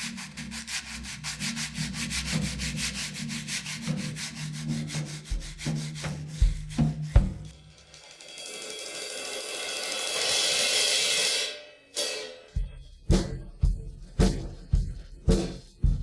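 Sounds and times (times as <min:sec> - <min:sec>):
low drum strikes: 0:05.3 - 0:07.5, 0:12.6 - 0:16.0.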